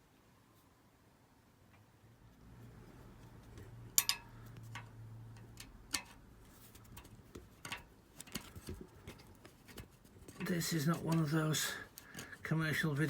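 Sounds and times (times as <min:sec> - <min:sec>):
light clicks and taps on bracket: 0:03.5 - 0:11.3.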